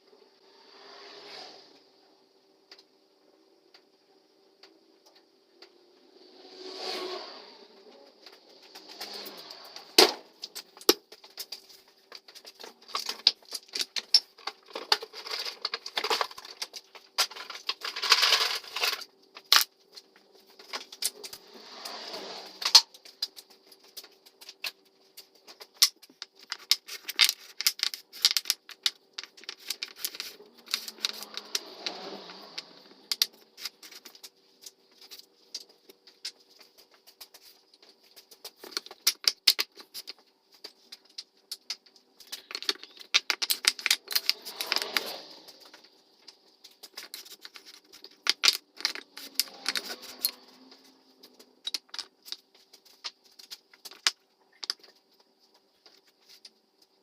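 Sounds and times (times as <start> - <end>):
scraping noises: 0.3 - 2.0, 6.0 - 10.7, 21.0 - 23.4, 29.2 - 35.3, 43.6 - 51.6
wooden frame parts clicking and knocking: 22.6 - 56.6.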